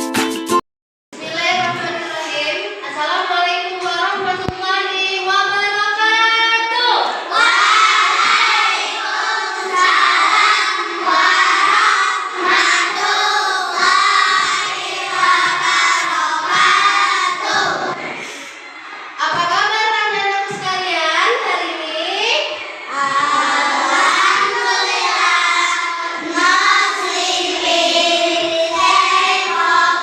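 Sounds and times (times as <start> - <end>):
young children singing: 7.1 - 19.1, 22.8 - 30.0.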